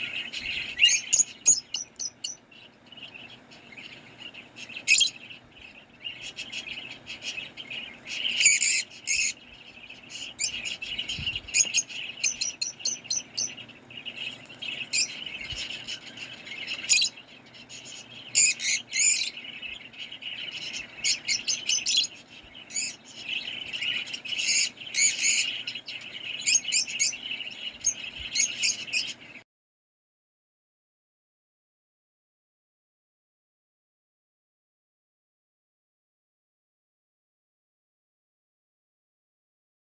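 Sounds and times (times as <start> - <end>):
lovebirds chirping and squeaking: 0.0 - 29.4.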